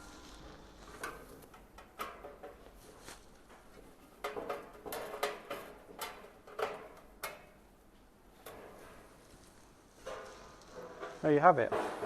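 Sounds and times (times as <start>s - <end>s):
metallic clicks and knocks: 3.5s - 7.6s.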